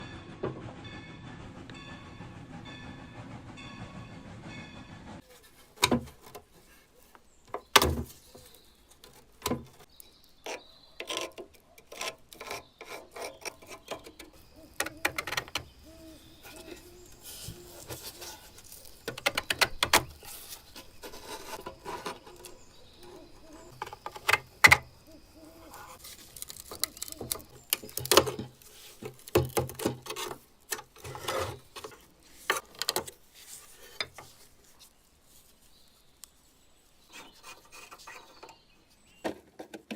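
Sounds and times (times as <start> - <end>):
metal parts clicking and knocking: 13.3 - 15.7
metal rubbing and scraping: 20.1 - 24.2.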